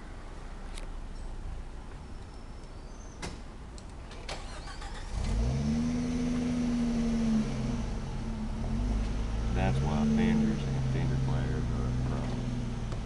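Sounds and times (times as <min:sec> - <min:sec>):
engine running and revving: 0:04.8 - 0:13.0.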